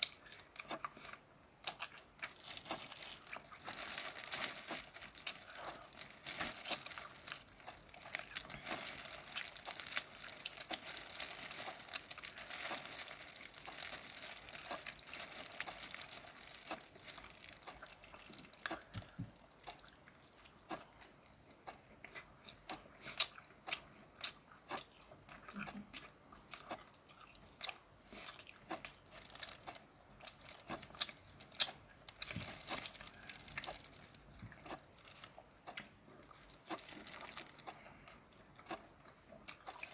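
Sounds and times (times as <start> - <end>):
wet chewing: 0.0 - 39.9
crackling rustle of shrimp: 1.9 - 21.4, 27.6 - 38.8.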